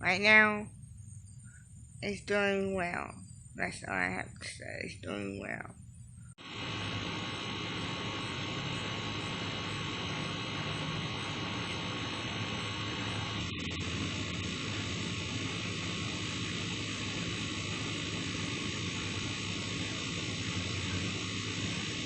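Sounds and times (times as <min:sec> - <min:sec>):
low hum: 0:00.0 - 0:04.3, 0:05.0 - 0:22.0
faint steady tones: 0:00.0 - 0:22.0
steady rushing noise: 0:06.4 - 0:22.0.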